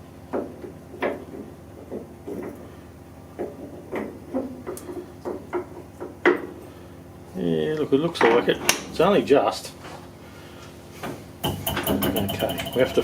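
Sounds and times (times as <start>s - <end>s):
faint steady hum: 0.0s - 13.0s
lathe tool clunks and clicks: 11.0s - 13.0s.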